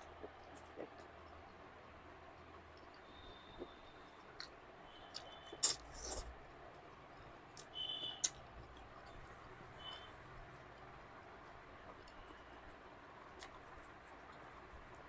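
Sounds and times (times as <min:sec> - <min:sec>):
mouth clicks: 0:05.1 - 0:06.2, 0:07.6 - 0:08.4
chewing noises: 0:13.3 - 0:14.4.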